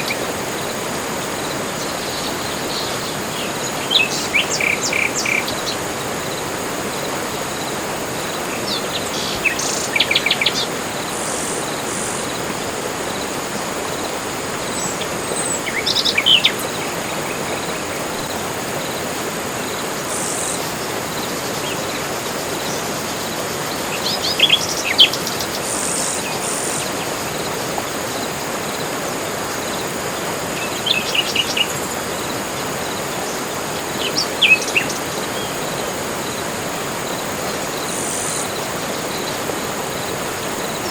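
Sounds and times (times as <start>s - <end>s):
insect drone: 0.0s - 40.9s
birds chirping and trilling: 14.6s - 18.3s.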